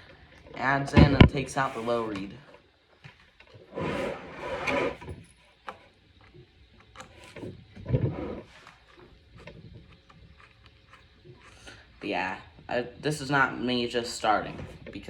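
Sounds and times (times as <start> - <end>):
rubbing and scraping on wood: 0.6 - 2.4, 3.6 - 11.8.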